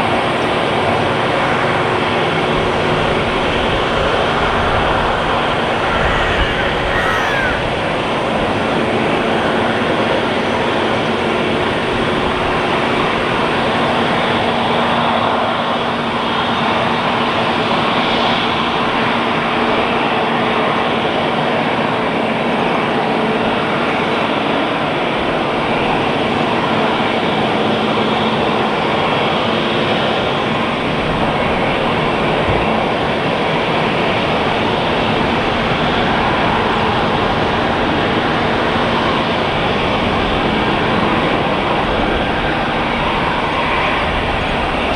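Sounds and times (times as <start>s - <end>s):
jet engines running: 0.0s - 17.6s.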